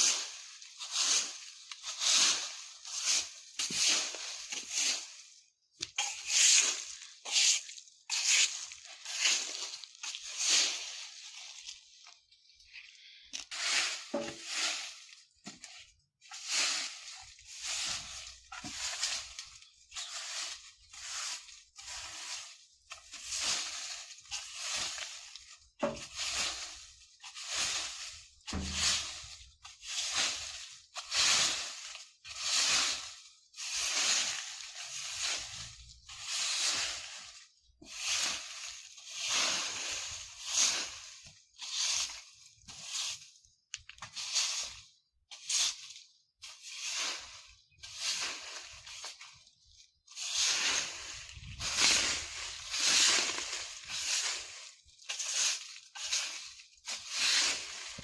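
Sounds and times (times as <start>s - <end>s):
broom sweeping dry leaves: 0.0s - 58.0s.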